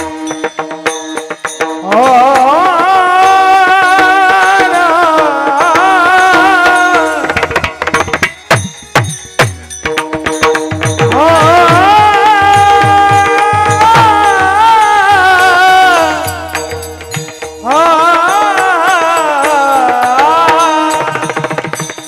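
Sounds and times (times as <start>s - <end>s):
small hand cymbals: 0.0s - 2.6s, 5.5s - 22.0s
drum strokes: 0.0s - 22.0s
person singing: 1.8s - 8.0s, 11.0s - 22.0s.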